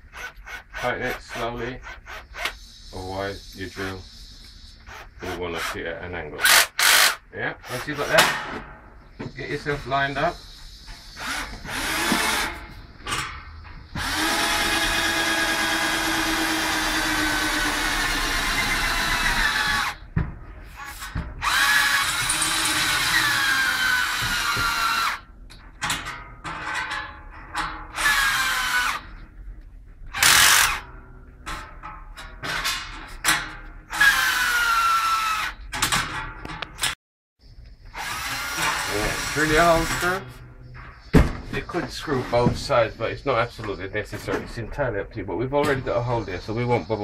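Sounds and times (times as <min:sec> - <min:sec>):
electric drill boring: 0:06.4 - 0:08.1, 0:11.2 - 0:12.6, 0:14.0 - 0:20.0, 0:21.4 - 0:25.2, 0:27.9 - 0:29.0, 0:30.2 - 0:30.8, 0:33.9 - 0:35.6, 0:37.9 - 0:40.2.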